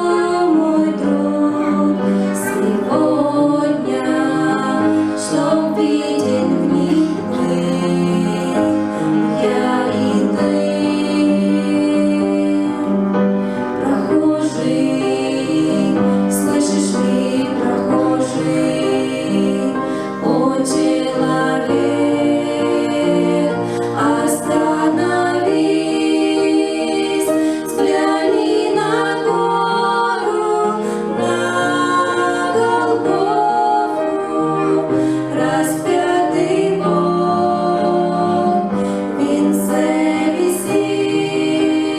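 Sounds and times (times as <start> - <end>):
women singing a christian song: 0.0 - 13.0, 13.7 - 41.9
instrumental accompaniment: 0.0 - 41.9.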